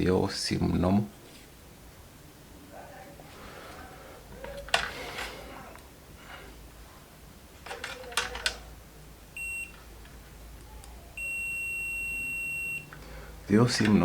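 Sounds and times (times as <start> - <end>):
multimeter beeps: 9.4 - 9.9, 11.2 - 13.0.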